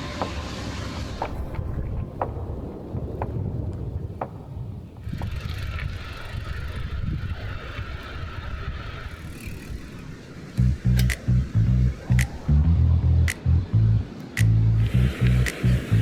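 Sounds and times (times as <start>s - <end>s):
high hiss: 0.0s - 1.8s, 13.3s - 16.0s
bicycle tyres rumbling: 0.0s - 16.0s
wind on microphone: 0.0s - 16.0s
rattling clicks: 10.6s - 11.3s.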